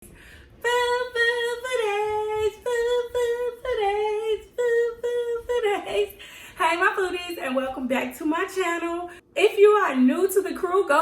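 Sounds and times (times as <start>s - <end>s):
woman singing unaccompanied tune: 0.6s - 9.2s.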